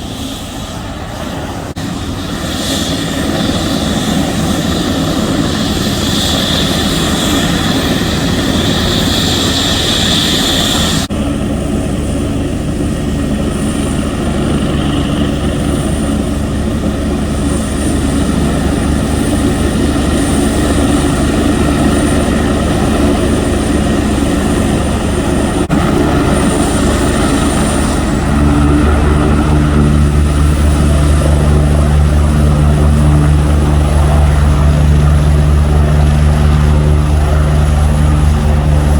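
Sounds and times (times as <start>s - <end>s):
helicopter rotor and turbine: 0.0s - 38.9s
thin high whine: 1.8s - 38.9s.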